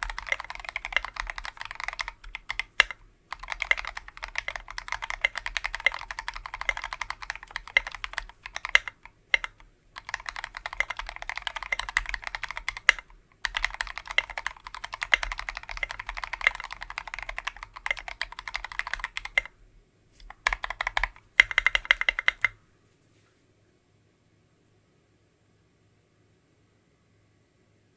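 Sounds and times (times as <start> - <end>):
fast keyboard typing: 0.0 - 19.6, 20.2 - 22.6.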